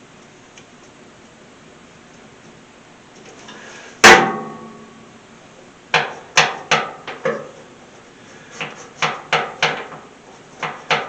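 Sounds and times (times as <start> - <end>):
loud metallic clank: 4.0 - 5.0.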